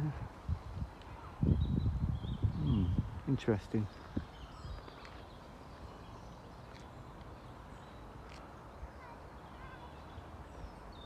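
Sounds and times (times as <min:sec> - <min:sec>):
wind rumbling on microphone: 0:00.0 - 0:05.3
faint bird chirps: 0:03.8 - 0:11.0.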